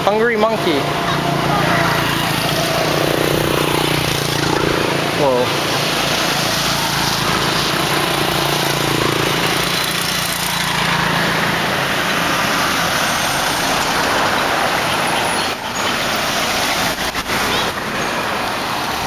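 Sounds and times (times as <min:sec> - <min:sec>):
rushing road noise: 0:00.0 - 0:19.0
motorbike engine running: 0:01.5 - 0:05.3.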